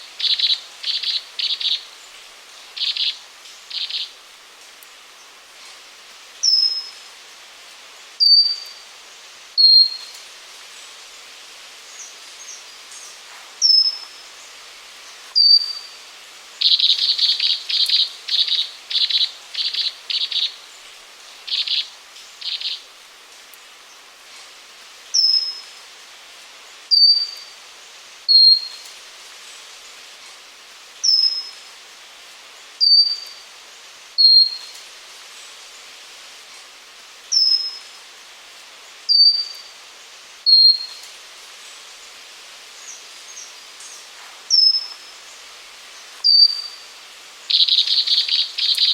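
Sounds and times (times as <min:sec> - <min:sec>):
bird singing high whistled notes: 0:08.2 - 0:08.7, 0:09.6 - 0:10.1, 0:15.4 - 0:16.0, 0:28.3 - 0:28.8, 0:32.8 - 0:33.4, 0:34.2 - 0:34.7, 0:39.1 - 0:39.7, 0:40.5 - 0:41.0, 0:46.2 - 0:46.8.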